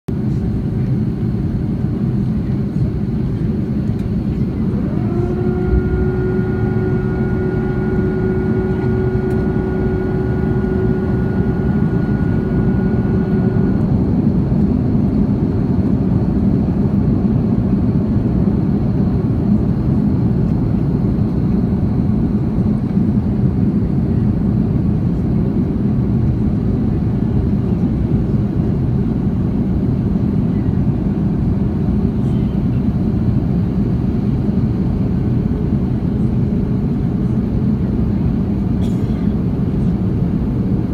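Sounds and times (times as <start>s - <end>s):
airliner cabin rumble: 0.1s - 40.9s
rising whine: 3.9s - 16.3s.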